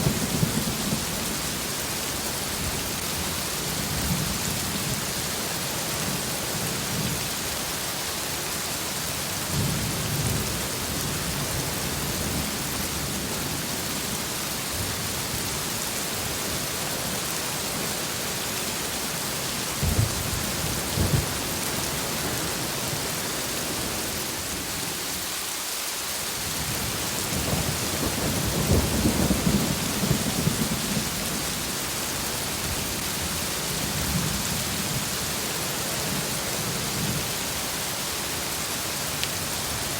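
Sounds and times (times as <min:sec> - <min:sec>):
heavy rain: 0:00.0 - 0:39.9
thunder rumbling: 0:26.6 - 0:31.8.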